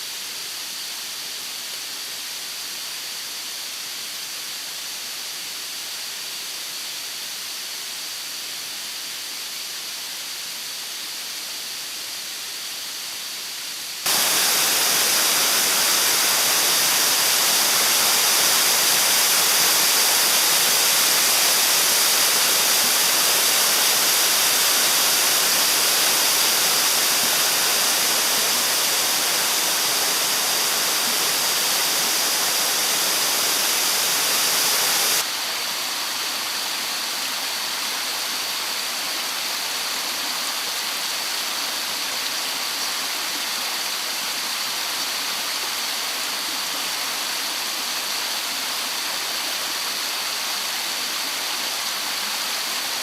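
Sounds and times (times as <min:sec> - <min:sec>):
stream rushing over rocks: 0:14.0 - 0:53.0.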